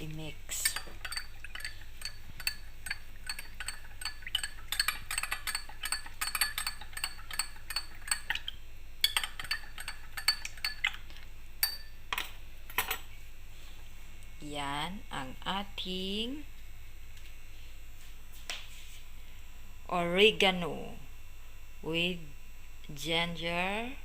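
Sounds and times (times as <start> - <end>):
spoon clinking against container: 0.6 - 8.4, 9.0 - 11.0, 11.6 - 12.0.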